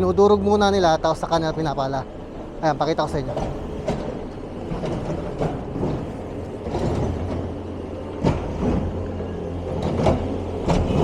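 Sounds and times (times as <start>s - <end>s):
snow-clearing machine engine: 0.0s - 11.0s
sharp scraping knocks: 3.1s - 9.1s, 9.7s - 11.0s.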